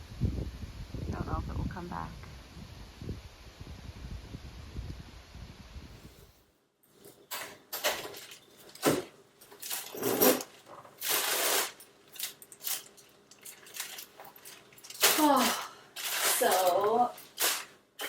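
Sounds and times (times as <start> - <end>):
kitchen knocks and clatters: 7.0 - 17.8.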